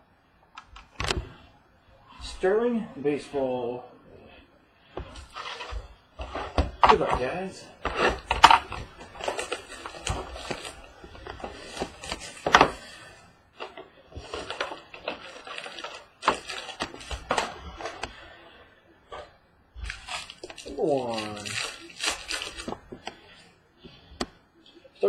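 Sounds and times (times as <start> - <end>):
card packaging crinkling and rustling: 5.0 - 18.4, 19.2 - 23.1.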